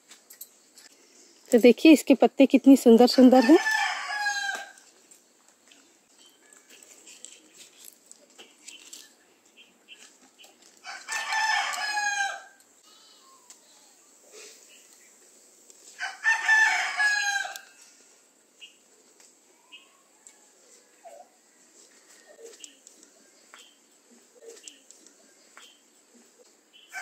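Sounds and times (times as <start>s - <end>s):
rooster crowing: 3.3s - 4.8s, 10.8s - 12.6s, 16.0s - 17.9s
faint scattered clicks: 22.4s - 23.8s, 24.4s - 25.8s.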